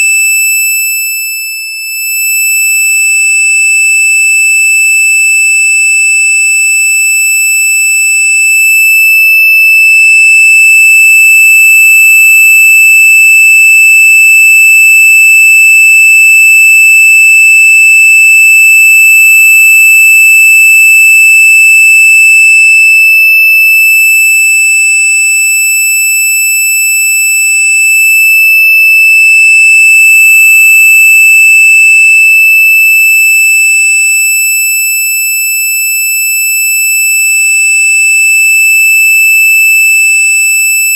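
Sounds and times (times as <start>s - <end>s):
high-pitched electronic tone: 29.1s - 32.2s.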